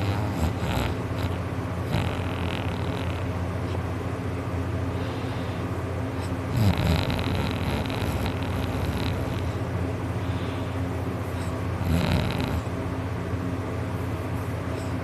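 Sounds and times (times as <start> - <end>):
loud rough snoring: 0.0 - 3.3, 6.2 - 9.6, 11.4 - 12.7
steady low hum: 0.0 - 15.0.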